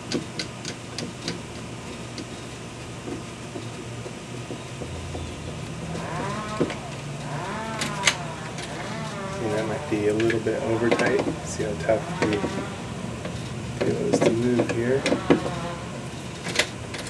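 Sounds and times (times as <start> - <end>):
low hum: 0.0 - 17.0
wavering moaning tone: 5.0 - 13.3, 14.0 - 16.2.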